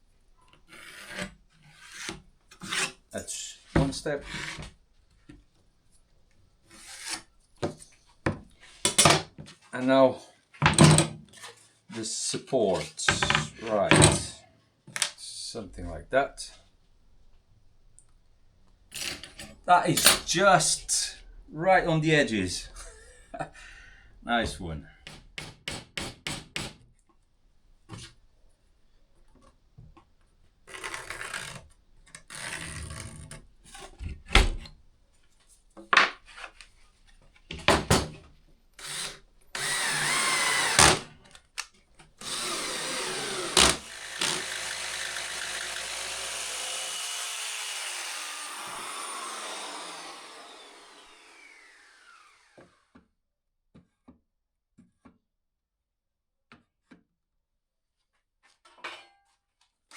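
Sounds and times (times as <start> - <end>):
wood knocking and scraping: 12.8 - 14.3
electric power tool running: 38.8 - 41.2, 42.2 - 52.8.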